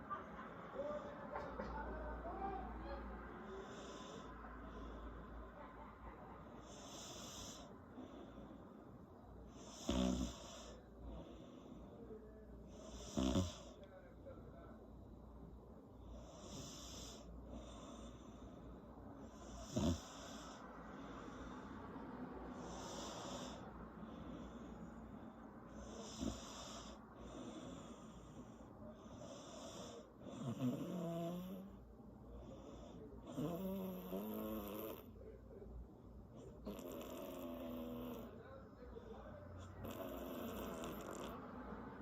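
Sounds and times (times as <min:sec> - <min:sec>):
woman snoring: 0:09.6 - 0:10.8, 0:12.9 - 0:13.7, 0:19.5 - 0:20.6, 0:25.9 - 0:27.0, 0:29.5 - 0:31.7, 0:33.3 - 0:35.1, 0:36.7 - 0:38.3, 0:39.8 - 0:41.4.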